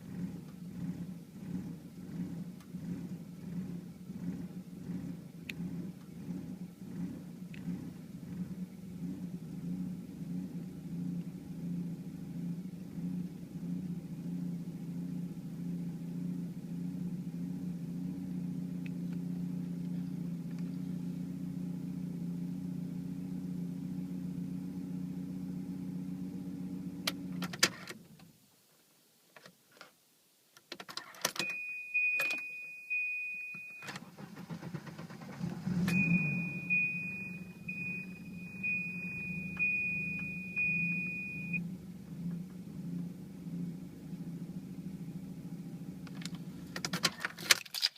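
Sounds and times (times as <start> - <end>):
ignition clicks: 5.4 - 6.2, 27.0 - 28.3, 30.6 - 41.6, 46.0 - 47.6
high warning beep: 31.4 - 34.0, 35.8 - 41.6.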